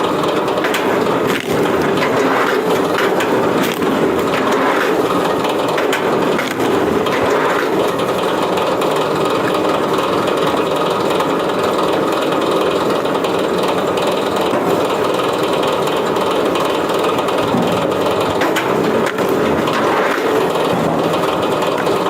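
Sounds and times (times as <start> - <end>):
steady machine noise: 0.0 - 22.0
wood cracking and splintering: 0.6 - 8.2.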